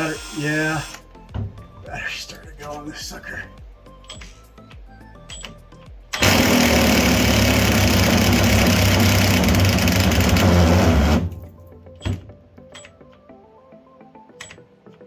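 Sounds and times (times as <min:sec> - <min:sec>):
battery power tool running: 0:00.0 - 0:01.1, 0:06.2 - 0:11.6.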